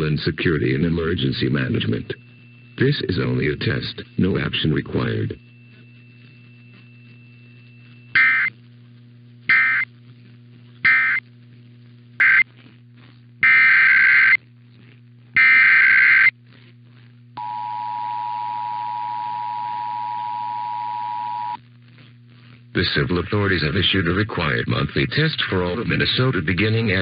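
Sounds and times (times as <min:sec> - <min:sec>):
screeching digital data bursts: 0:08.1 - 0:08.5, 0:09.5 - 0:09.9, 0:10.9 - 0:11.2, 0:12.2 - 0:12.4, 0:13.4 - 0:14.4, 0:15.4 - 0:16.3.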